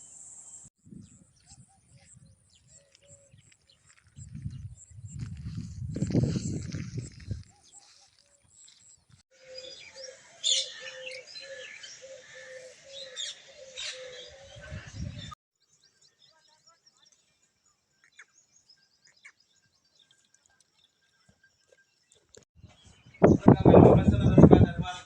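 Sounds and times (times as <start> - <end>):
birds chirping and calling: 0.9 - 17.3.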